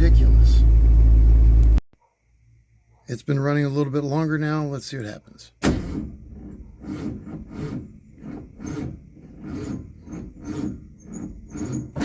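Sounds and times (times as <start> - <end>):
starter motor cranking slowly: 5.9 - 12.0.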